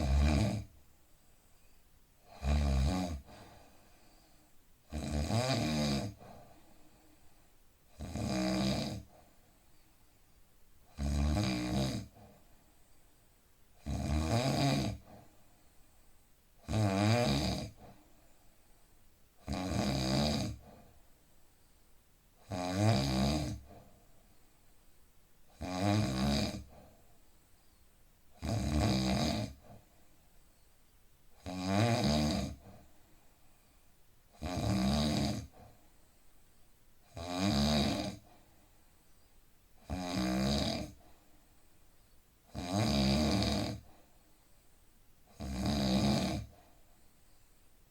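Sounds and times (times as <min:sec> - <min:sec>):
man snoring: 0:00.0 - 0:00.7, 0:02.3 - 0:03.3, 0:04.9 - 0:06.2, 0:07.9 - 0:09.1, 0:10.9 - 0:12.2, 0:13.8 - 0:15.2, 0:16.6 - 0:17.9, 0:19.4 - 0:20.7, 0:22.4 - 0:23.8, 0:25.6 - 0:26.8, 0:28.4 - 0:29.8, 0:31.4 - 0:32.8, 0:34.4 - 0:35.6, 0:37.1 - 0:38.2, 0:39.9 - 0:41.0, 0:42.5 - 0:43.9, 0:45.3 - 0:46.5.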